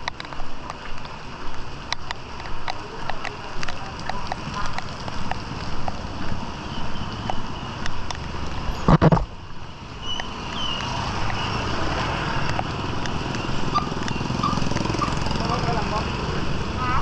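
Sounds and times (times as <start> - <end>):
street ambience: 0.0 - 17.0
bump on microphone: 8.6 - 9.4.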